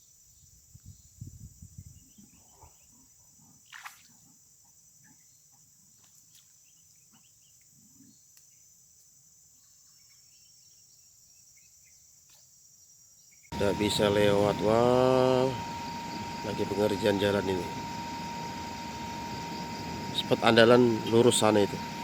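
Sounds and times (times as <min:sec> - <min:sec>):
high-pitched insect drone: 0:13.5 - 0:22.0.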